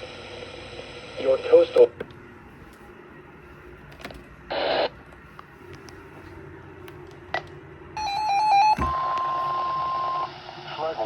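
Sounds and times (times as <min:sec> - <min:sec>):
radio static hiss: 0:00.0 - 0:02.0, 0:04.5 - 0:05.1, 0:10.5 - 0:11.0.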